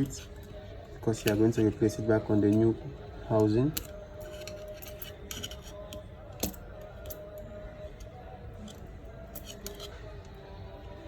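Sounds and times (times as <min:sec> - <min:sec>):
small metal tools clicking: 0:03.7 - 0:07.4, 0:08.0 - 0:10.0.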